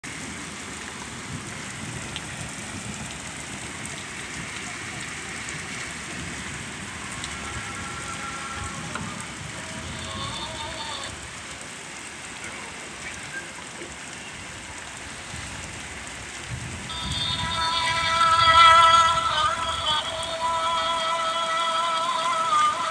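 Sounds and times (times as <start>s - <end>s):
steady rain: 0.0s - 22.9s
song with singing: 6.6s - 11.6s, 16.9s - 22.9s.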